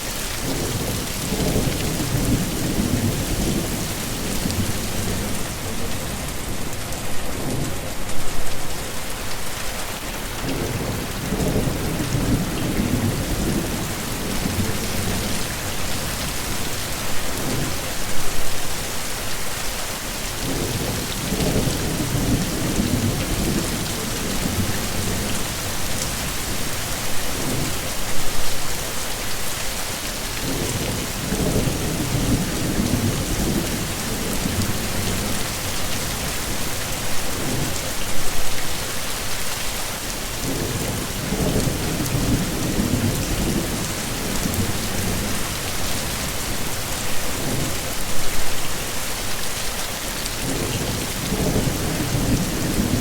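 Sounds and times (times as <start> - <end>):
heavy rain: 0.0 - 53.0
thunder rumbling: 0.4 - 6.7.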